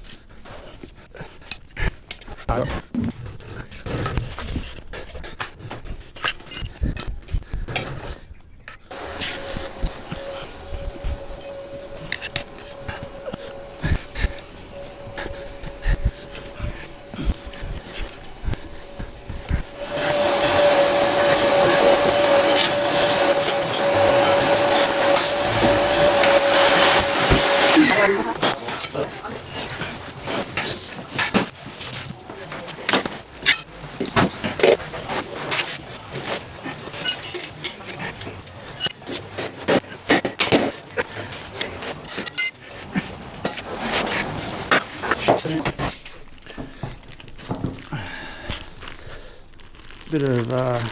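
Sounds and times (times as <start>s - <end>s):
machine motor whirring: 8.9s - 45.6s
ringing metallic clinks: 42.2s - 42.6s.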